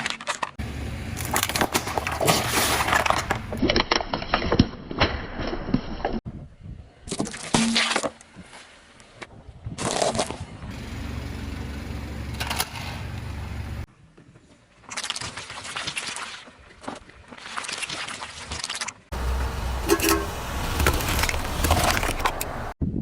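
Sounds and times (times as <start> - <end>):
objects crunching under tyres: 0.0 - 6.1, 14.4 - 22.8
car engine running: 19.1 - 22.8.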